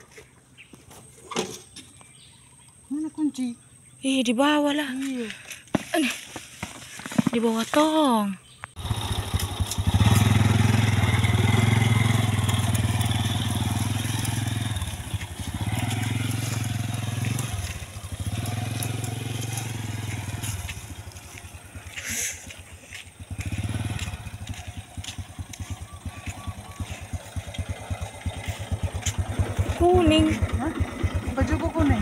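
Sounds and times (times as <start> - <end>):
motorcycle engine revving: 8.8 - 32.0.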